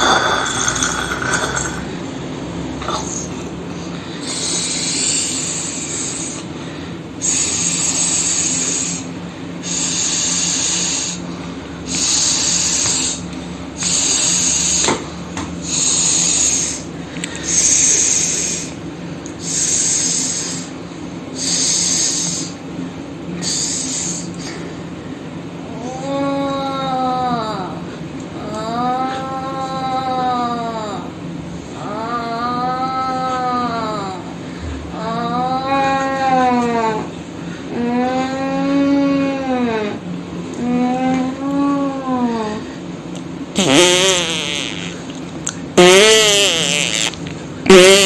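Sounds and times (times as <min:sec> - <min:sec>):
person snoring: 0:00.0 - 0:01.9, 0:43.6 - 0:45.0.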